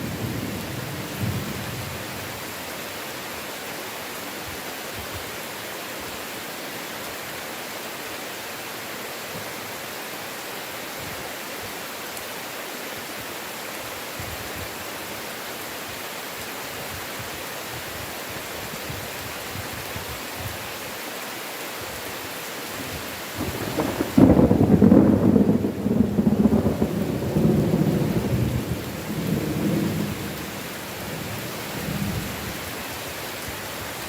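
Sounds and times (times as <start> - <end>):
heavy rain: 0.0 - 34.0
thunder rumble: 23.4 - 32.4.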